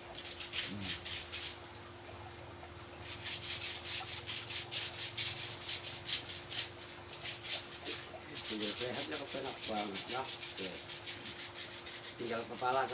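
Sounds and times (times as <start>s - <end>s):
massage strokes rubbing skin: 3.1s - 12.9s.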